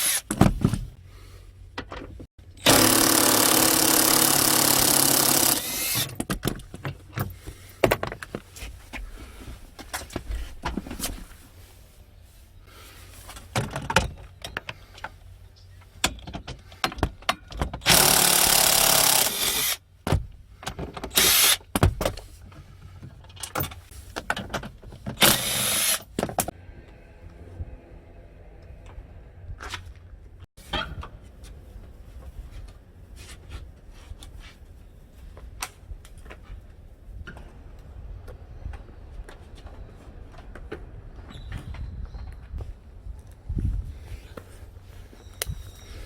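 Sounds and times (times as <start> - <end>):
power tool running: 0.0 - 0.3, 2.6 - 6.1, 17.9 - 19.8, 21.2 - 21.6, 25.2 - 26.0.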